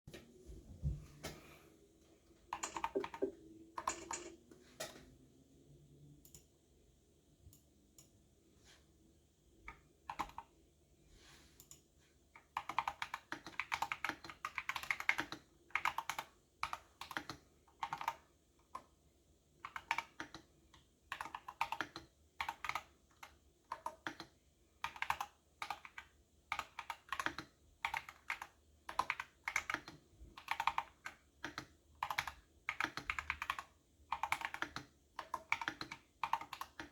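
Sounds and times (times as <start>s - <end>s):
typing on computer keyboard: 2.5s - 5.0s, 9.6s - 10.5s, 12.4s - 19.0s, 19.6s - 36.9s.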